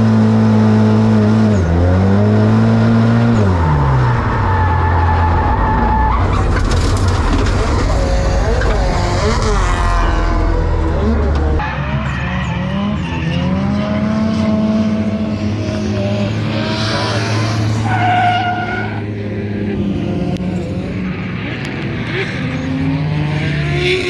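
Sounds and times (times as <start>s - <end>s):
car engine revving high: 7.8s - 24.0s
tyres screeching: 14.9s - 19.5s.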